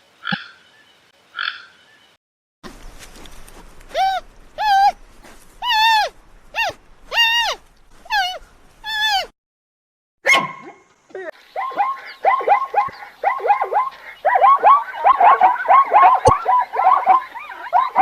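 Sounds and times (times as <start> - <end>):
dogs barking and yipping: 3.5 - 9.3, 10.2 - 18.0.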